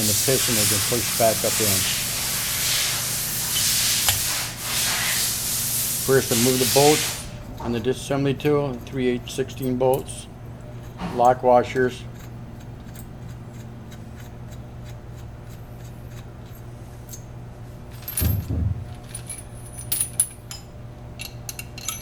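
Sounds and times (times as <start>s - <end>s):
metal bolts clinking: 17.9s - 22.0s
dull thump: 18.0s - 19.6s
low hum: 18.0s - 20.6s.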